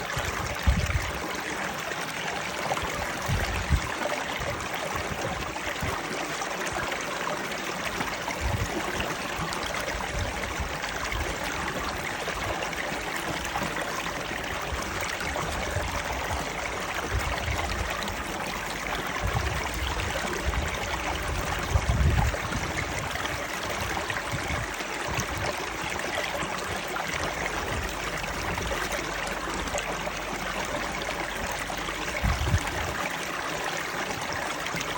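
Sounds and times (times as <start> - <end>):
running water: 0.0 - 34.9.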